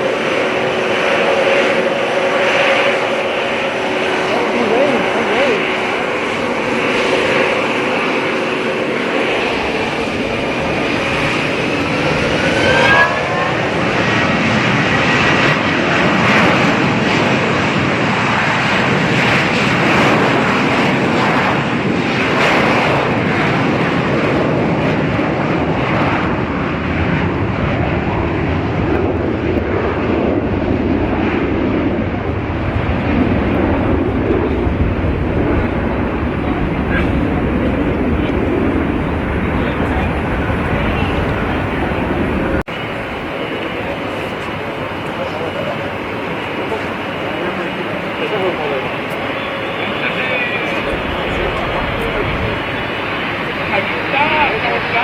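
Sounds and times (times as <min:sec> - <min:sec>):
jet engines roaring: 0:00.0 - 0:55.0
short rising whistle: 0:11.8 - 0:14.7.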